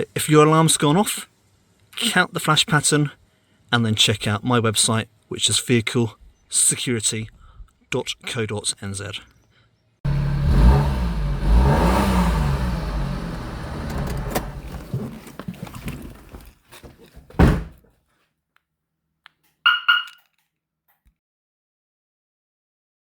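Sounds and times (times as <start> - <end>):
car door shutting: 11.4 - 15.6
car alarm chirps: 19.7 - 20.2.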